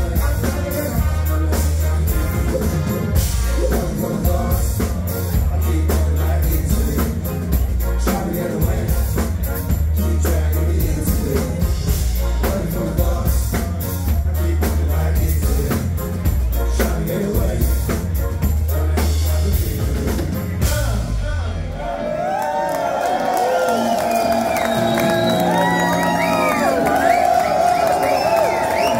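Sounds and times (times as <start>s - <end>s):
person singing: 0.0s - 20.8s
drum kit steady beat: 0.0s - 21.6s
heavy bass line: 0.0s - 22.0s.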